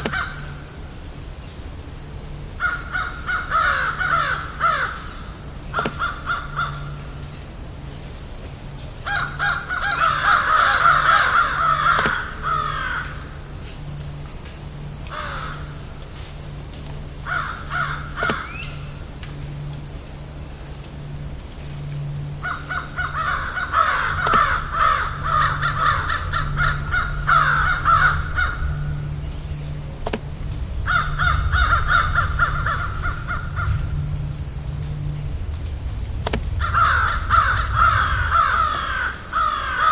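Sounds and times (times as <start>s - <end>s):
crows cawing: 0.0s - 0.7s, 2.6s - 7.2s, 9.0s - 13.4s, 15.1s - 15.9s, 17.2s - 19.0s, 22.4s - 29.2s, 30.8s - 34.0s, 36.6s - 39.9s
low hum: 0.0s - 39.9s.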